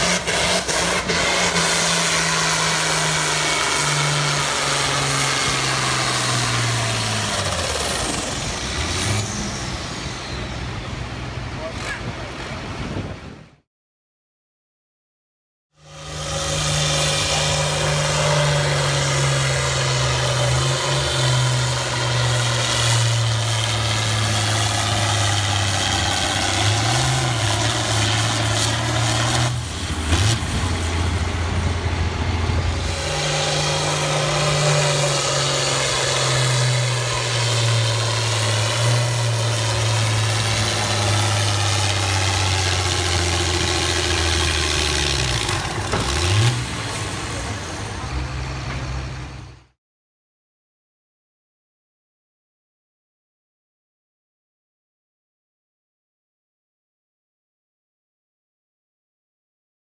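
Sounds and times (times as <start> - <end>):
tractor engine working under load: 0.0 - 12.7, 15.8 - 49.6.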